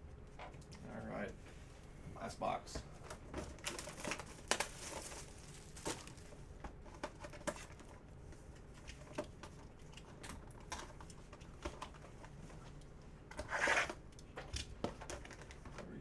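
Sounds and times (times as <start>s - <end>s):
card packs clicking and rustling: 3.1s - 7.9s.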